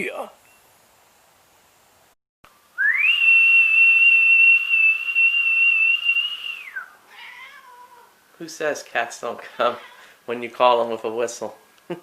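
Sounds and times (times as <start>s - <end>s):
whistle calling a cat: 2.8s - 7.0s.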